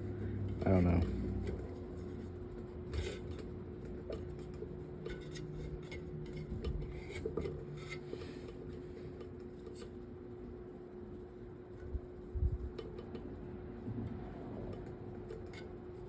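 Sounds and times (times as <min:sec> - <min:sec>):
metal scraping on metal: 0:00.4 - 0:08.8.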